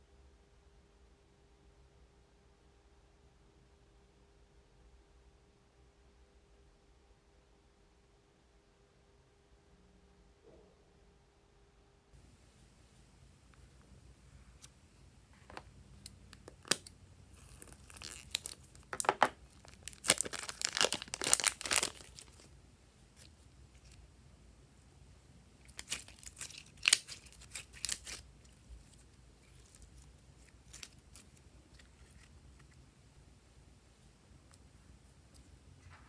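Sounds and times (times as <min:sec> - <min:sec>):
crinkling handling noise: 0:13.5 - 0:24.0, 0:25.6 - 0:32.8.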